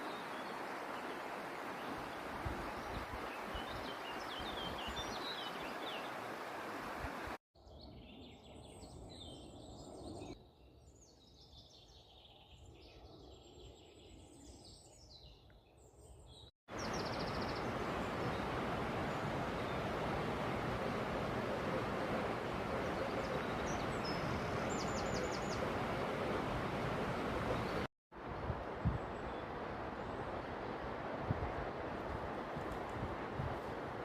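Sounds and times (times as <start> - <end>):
songbirds singing and chirping: 0.0 - 6.6, 7.6 - 30.5.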